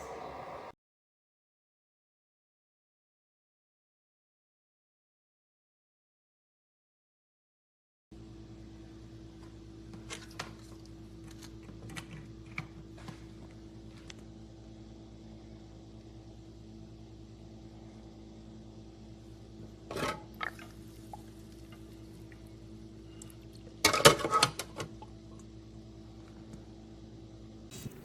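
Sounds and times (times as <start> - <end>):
steady low hum: 0.0 - 0.8, 8.1 - 28.0.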